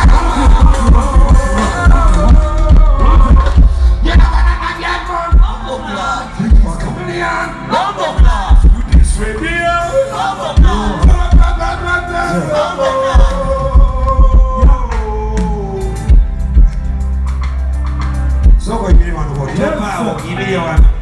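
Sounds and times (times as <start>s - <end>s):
person singing: 0.0s - 16.6s
heavy bass beat: 0.0s - 21.0s.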